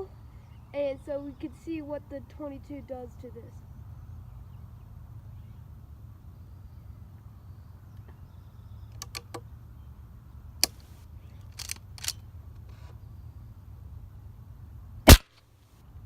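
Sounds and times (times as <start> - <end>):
rifle clicks: 11.4 - 12.2, 15.1 - 15.3.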